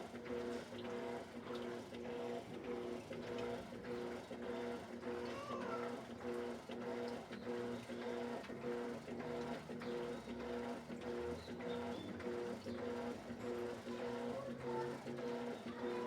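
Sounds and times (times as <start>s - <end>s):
washing machine motor humming: 6.2s - 16.0s.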